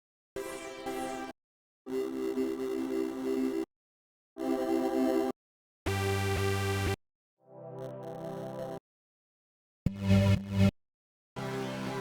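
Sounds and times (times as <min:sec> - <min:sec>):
synthesizer chord: 0:07.4 - 0:08.6.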